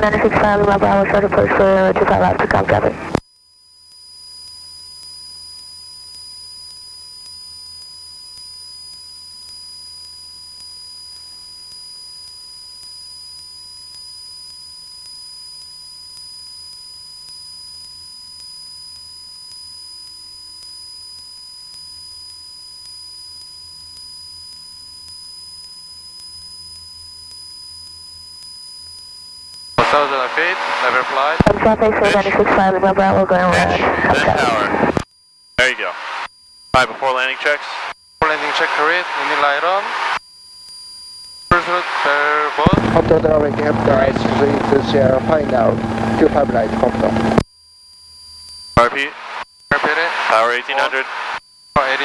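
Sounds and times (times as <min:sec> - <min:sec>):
muffled engine drone: 0:00.0 - 0:03.2, 0:29.8 - 0:35.0, 0:42.6 - 0:47.4
high electronic tones: 0:42.7 - 0:47.4.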